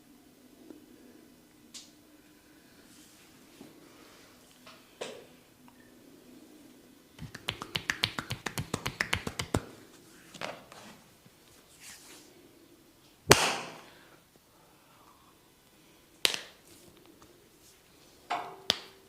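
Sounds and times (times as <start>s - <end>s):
hands tapping and snapping: 7.2s - 9.7s, 16.2s - 16.6s, 18.7s - 19.0s
loud hand smack: 13.3s - 13.8s.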